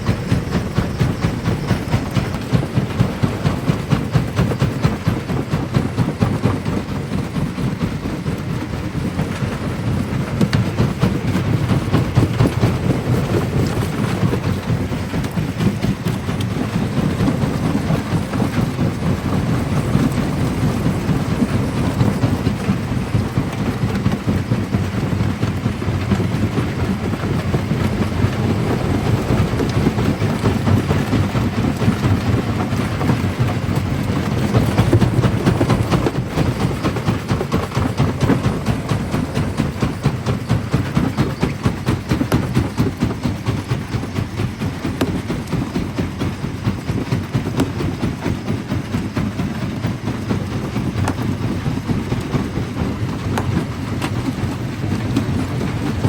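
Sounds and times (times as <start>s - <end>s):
jaw crusher rumbling: 26.1s - 40.9s.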